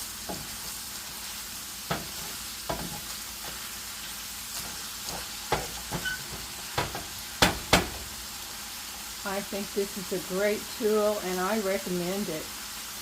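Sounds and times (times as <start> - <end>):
meat sizzling in a frying pan: 0.0 - 13.0
meat chopper knocking against pan: 1.9 - 3.1, 4.6 - 8.1.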